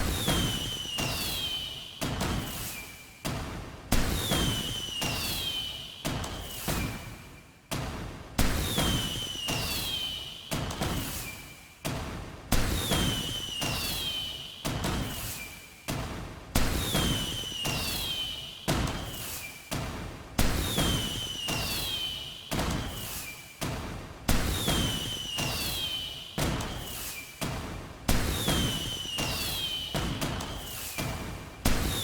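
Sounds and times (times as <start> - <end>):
small firework pops: 0.0 - 32.0
high falling whistle: 24.9 - 26.1, 28.6 - 30.0
fireworks bangs: 28.1 - 32.0.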